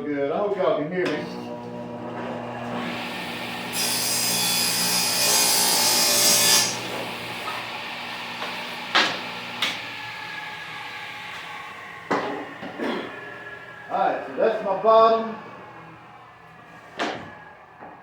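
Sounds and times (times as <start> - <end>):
saw blade cutting panel: 1.1 - 17.9
table saw running: 1.1 - 18.0
sharp knocks: 8.9 - 9.8.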